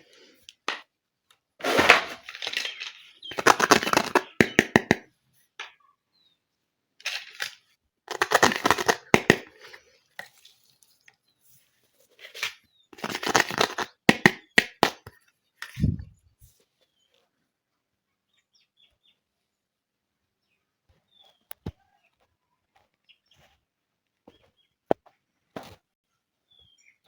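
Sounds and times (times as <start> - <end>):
plastic toy pieces rustling: 1.6 - 4.4, 7.0 - 11.0, 12.2 - 14.0.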